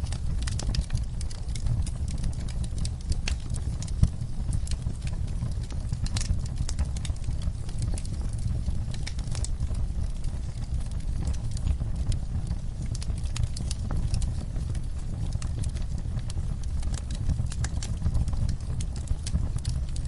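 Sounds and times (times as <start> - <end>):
fireplace fire crackling: 0.0 - 20.0.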